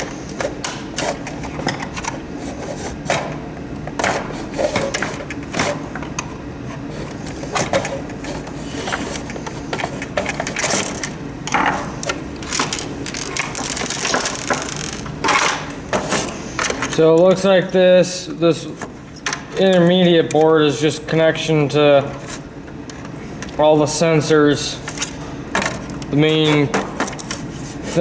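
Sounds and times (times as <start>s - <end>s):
plastic parts clicking and scraping: 9.8s - 15.6s.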